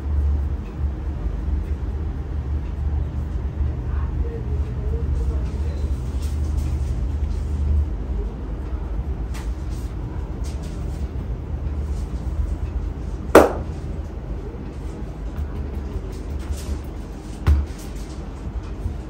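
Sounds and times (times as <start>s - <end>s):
sharp hand smack: 13.4s - 13.7s.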